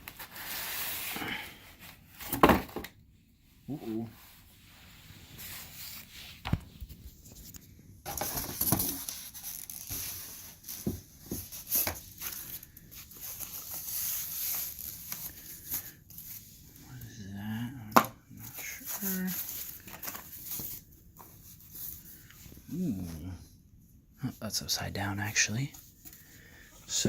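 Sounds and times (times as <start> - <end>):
packaging rustling and crinkling: 5.4 - 16.6, 18.4 - 22.4.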